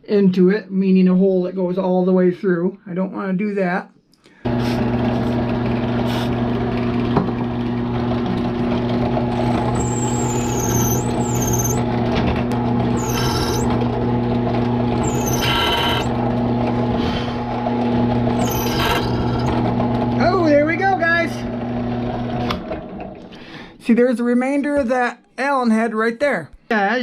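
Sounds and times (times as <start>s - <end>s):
electric drill running: 4.5s - 23.3s
drill bit squealing on metal: 9.3s - 11.9s, 12.9s - 13.8s, 15.0s - 16.2s, 18.4s - 19.6s.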